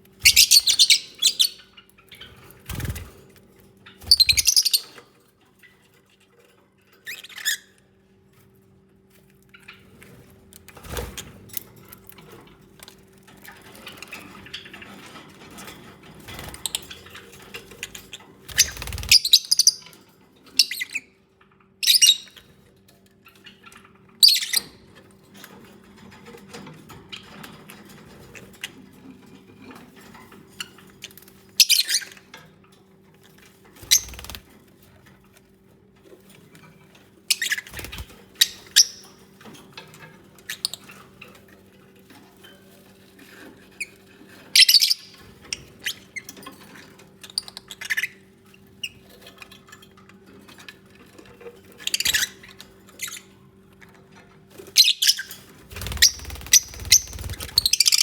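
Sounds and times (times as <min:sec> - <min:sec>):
soft bird chatter: 0:00.0 - 0:06.1, 0:09.2 - 0:35.3, 0:36.3 - 0:58.0
lovebirds squeaky chirps: 0:00.2 - 0:03.0, 0:04.0 - 0:05.0, 0:17.8 - 0:20.0, 0:21.8 - 0:22.4, 0:24.2 - 0:24.8, 0:31.6 - 0:32.2, 0:33.8 - 0:34.4, 0:37.3 - 0:39.2, 0:44.6 - 0:46.3, 0:51.8 - 0:53.3, 0:54.8 - 0:58.0.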